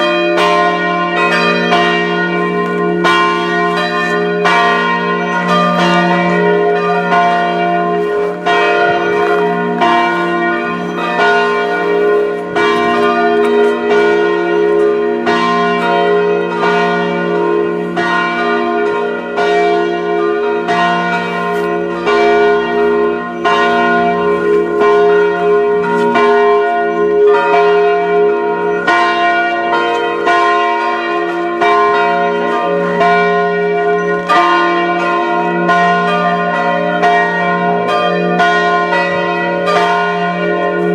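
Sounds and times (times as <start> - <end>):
church bells pealing: 0.0 - 40.9.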